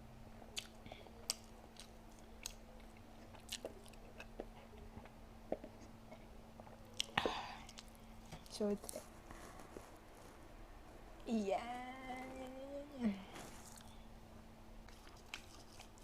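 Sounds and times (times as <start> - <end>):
crunchy chewing and biting: 0.6 - 6.0, 14.9 - 16.0.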